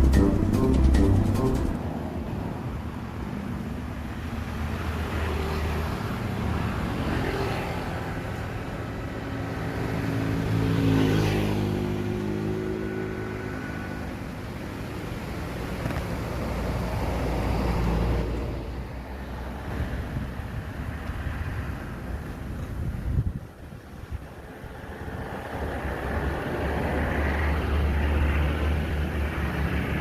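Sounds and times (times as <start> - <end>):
vehicles passing on road: 0.0 - 30.0.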